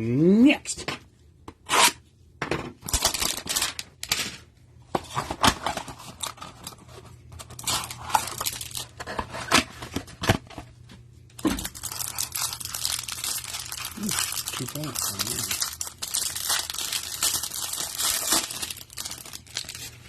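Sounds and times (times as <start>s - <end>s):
wrapper rustling: 2.9s - 4.0s, 5.1s - 9.5s, 11.4s - 20.0s.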